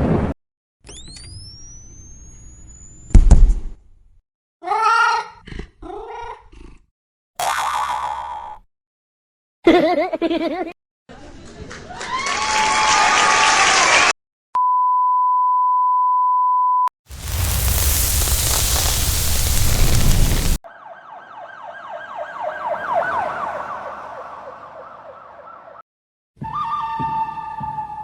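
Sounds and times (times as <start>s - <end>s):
burst of rushing noise: 17.1s - 20.6s
wavering siren-like wail: 20.7s - 25.8s.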